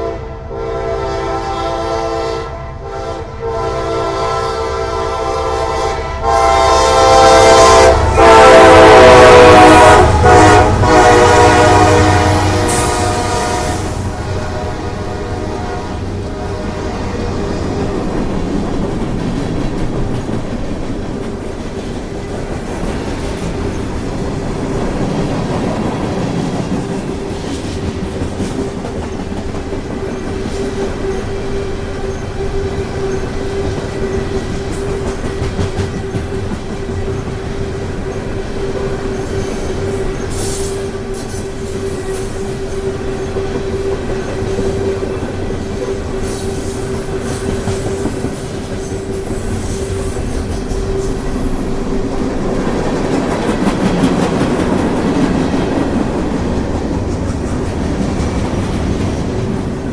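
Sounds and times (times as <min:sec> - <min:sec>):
train wheels clattering: 0:06.8 - 0:59.9.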